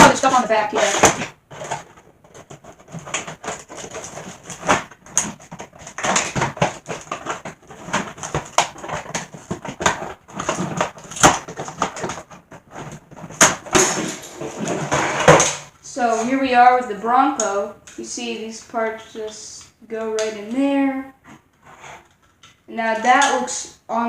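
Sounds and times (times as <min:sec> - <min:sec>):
plastic packaging crinkling: 0:00.0 - 0:15.6.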